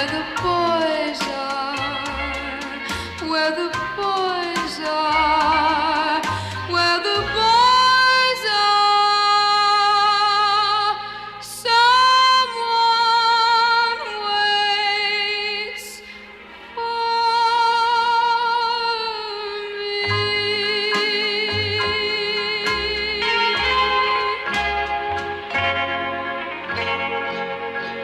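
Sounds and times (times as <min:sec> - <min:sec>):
woman singing pop ballad: 0:00.0 - 0:25.9
musical accompaniment: 0:00.0 - 0:28.0.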